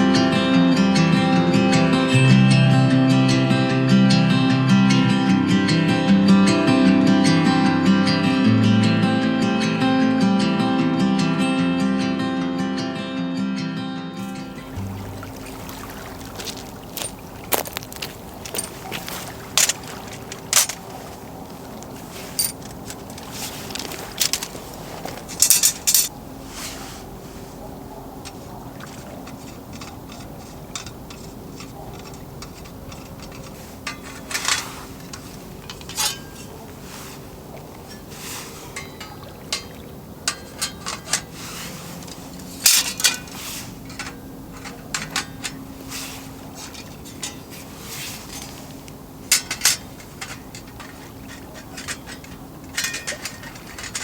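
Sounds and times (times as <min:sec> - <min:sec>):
dishes and cutlery clinking: 0:14.2 - 0:26.1, 0:28.3 - 0:48.7, 0:49.3 - 0:54.0
faint steady hum: 0:14.2 - 0:54.0.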